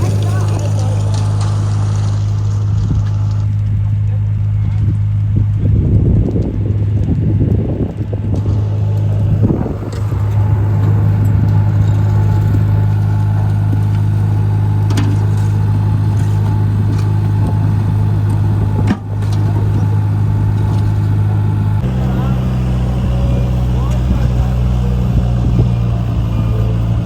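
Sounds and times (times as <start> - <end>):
machinery engine idling: 0.0 - 27.0.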